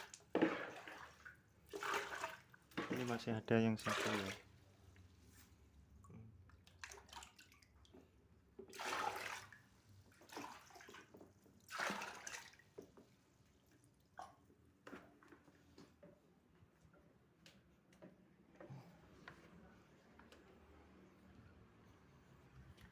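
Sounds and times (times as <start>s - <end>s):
water splashing: 3.8s - 4.5s, 11.7s - 12.6s.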